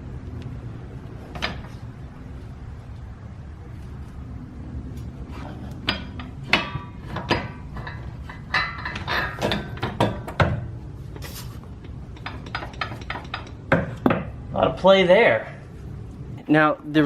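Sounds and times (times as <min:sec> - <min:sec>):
metallic clinks and clunks: 0:05.6 - 0:10.7, 0:11.8 - 0:14.2.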